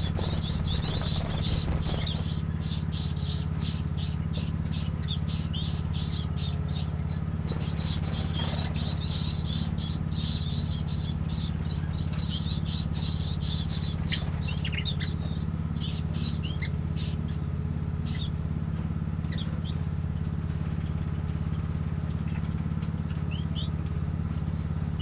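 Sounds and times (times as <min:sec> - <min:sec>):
small birds chirping: 0:00.0 - 0:18.4, 0:19.2 - 0:25.0.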